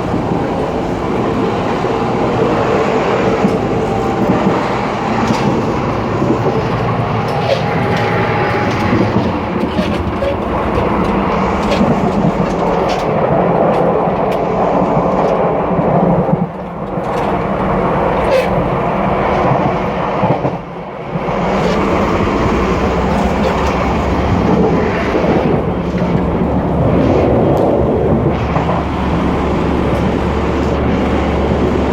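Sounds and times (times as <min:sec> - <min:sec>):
train wheels rumbling on track: 0:00.0 - 0:31.9.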